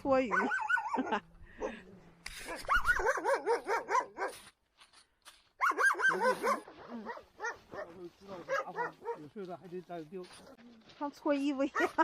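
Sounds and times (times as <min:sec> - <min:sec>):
dog barking in high yaps: 0:00.3 - 0:01.0, 0:02.5 - 0:04.4, 0:05.6 - 0:09.3, 0:11.7 - 0:12.0.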